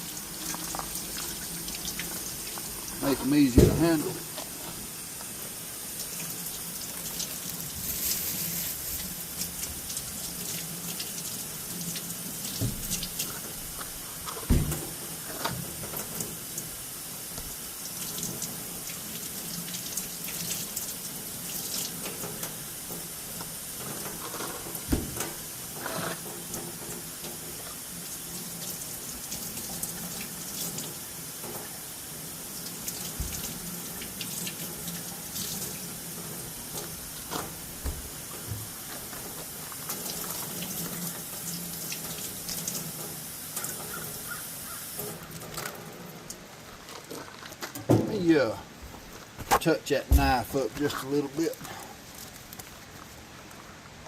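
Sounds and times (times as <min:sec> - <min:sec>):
running water: 0:00.0 - 0:54.0
handling knocks: 0:03.3 - 0:04.2, 0:14.4 - 0:15.0.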